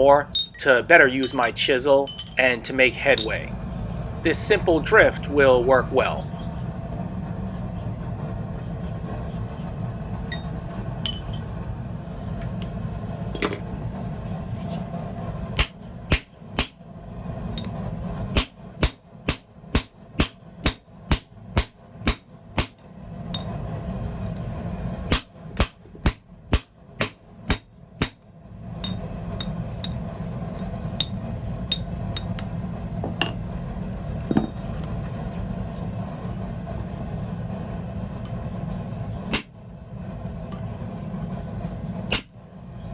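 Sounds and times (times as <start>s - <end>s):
steady low hum: 0.0s - 42.9s
hammer striking steel drift: 15.6s - 16.8s, 18.3s - 23.5s, 25.1s - 28.2s, 39.3s - 39.6s, 42.1s - 42.4s.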